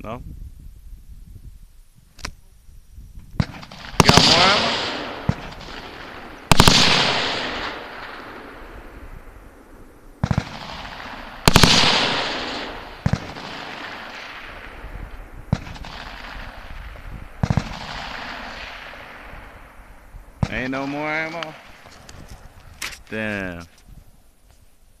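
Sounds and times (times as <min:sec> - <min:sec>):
gunshots with echo: 0:03.4 - 0:09.6, 0:10.2 - 0:19.8, 0:20.4 - 0:22.0.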